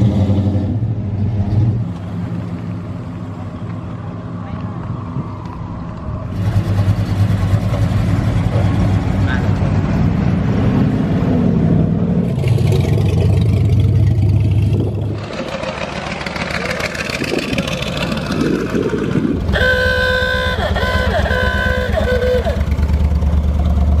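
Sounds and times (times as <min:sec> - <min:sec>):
car engines idling: 0:01.9 - 0:24.0
car horn: 0:19.5 - 0:22.8.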